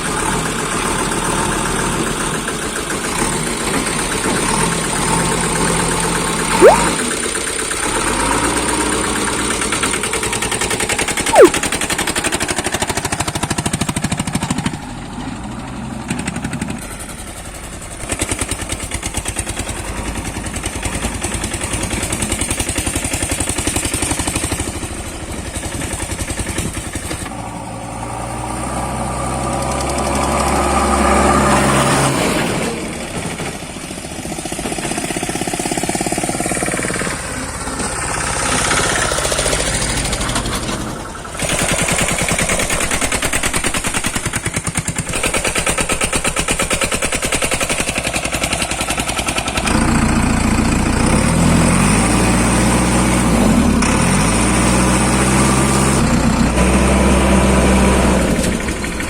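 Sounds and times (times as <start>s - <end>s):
short sharp chirps: 6.5s - 7.0s, 11.3s - 11.6s
heavy machinery diesel engine running: 47.6s - 59.0s.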